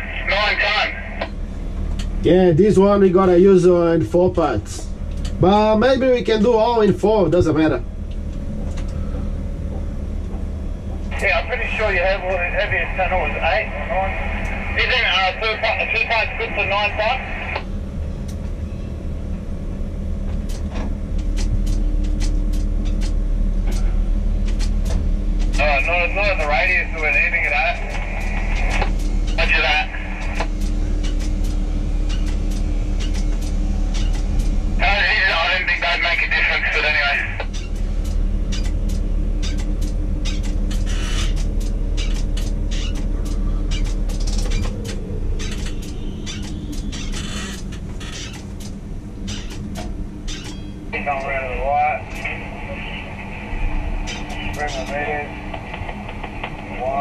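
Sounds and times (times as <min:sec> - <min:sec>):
crane machinery rumbling: 0:00.0 - 0:57.0
faint hum: 0:00.0 - 0:57.0.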